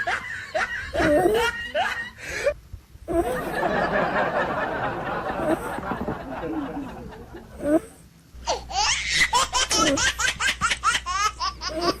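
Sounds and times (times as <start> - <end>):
person laughing heartily: 0.0 - 2.2, 3.1 - 7.9
short vocal sound: 7.5 - 8.0.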